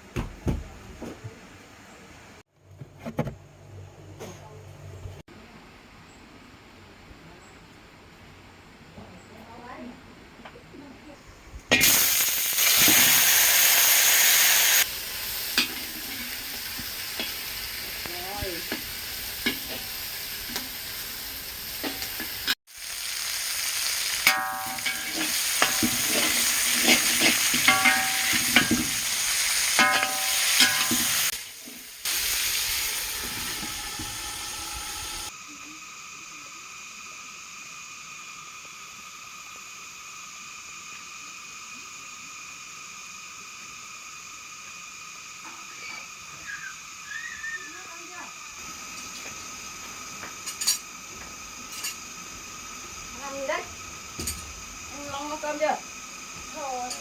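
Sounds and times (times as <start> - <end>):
steady hiss: 6.2 - 57.0
food sizzling in a pan: 11.7 - 57.0
stirring clinks and scrapes: 24.2 - 29.0, 29.8 - 31.3.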